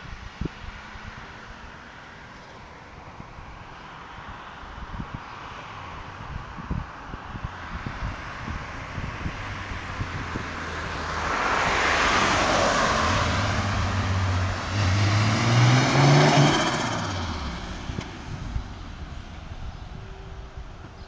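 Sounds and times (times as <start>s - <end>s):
car accelerating past: 9.2s - 20.0s.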